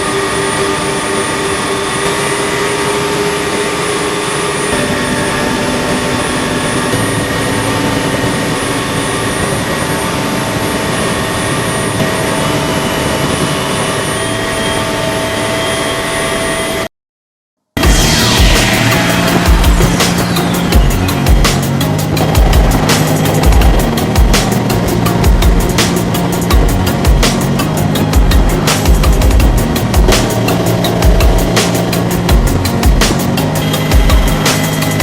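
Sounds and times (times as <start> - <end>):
helicopter turbine and rotor: 0.0 - 16.9, 17.8 - 35.0.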